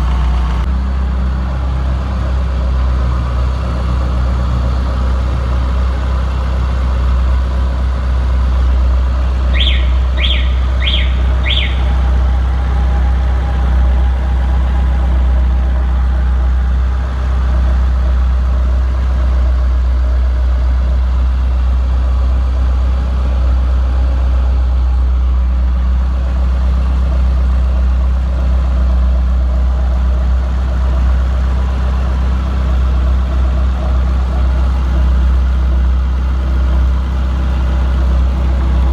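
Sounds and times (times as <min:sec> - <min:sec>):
engine idling: 0:00.0 - 0:38.9
short high chirps: 0:09.5 - 0:12.2.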